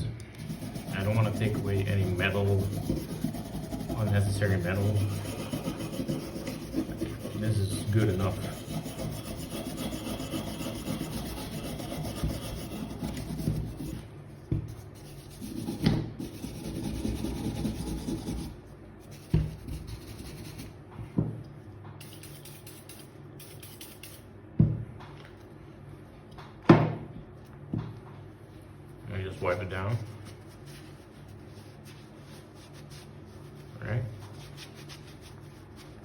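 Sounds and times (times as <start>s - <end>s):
brush scrubbing metal: 0.3s - 14.0s.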